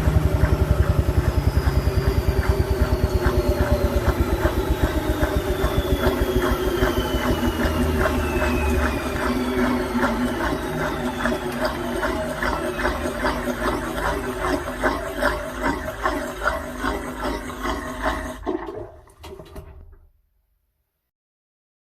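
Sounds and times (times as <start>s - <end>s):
washing machine drum knocking: 0.0s - 15.2s
washing machine motor whine: 0.0s - 20.0s.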